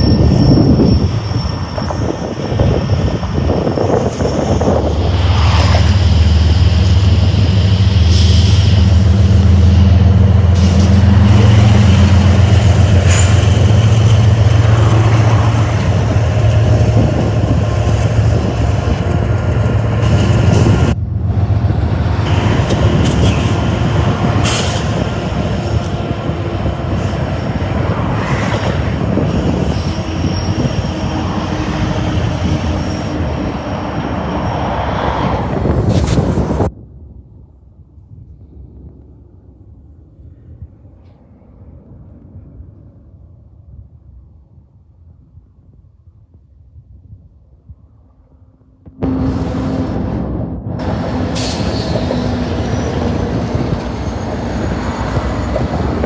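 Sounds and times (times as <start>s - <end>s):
freight cars clattering on rails: 0.0s - 21.0s, 22.3s - 36.7s, 50.7s - 56.0s
diesel locomotive rumble: 0.0s - 36.7s, 48.9s - 56.0s.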